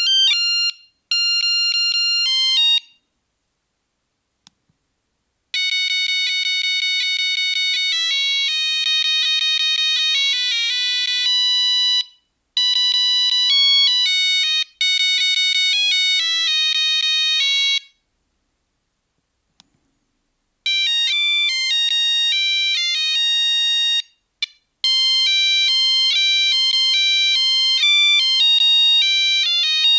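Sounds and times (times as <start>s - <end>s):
monophonic ringtone melody: 0.0s - 3.0s, 5.6s - 17.9s, 20.7s - 24.2s, 24.8s - 29.9s.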